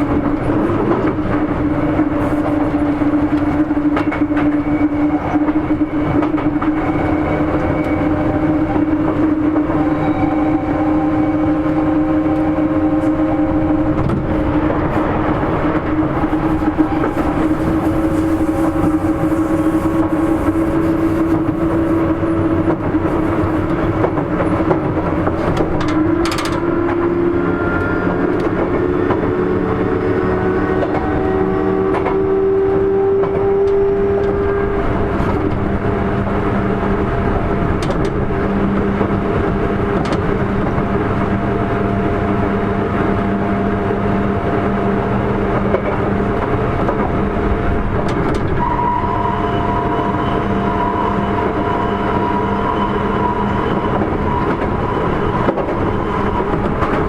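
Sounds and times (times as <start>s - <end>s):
electric train rumble: 0.0s - 57.0s
train motor tones: 2.0s - 35.7s.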